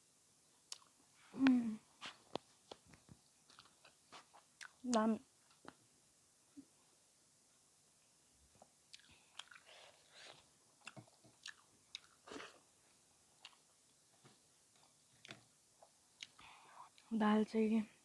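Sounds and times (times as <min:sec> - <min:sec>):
person chewing food: 0:00.7 - 0:01.0, 0:03.4 - 0:05.8, 0:08.6 - 0:17.1.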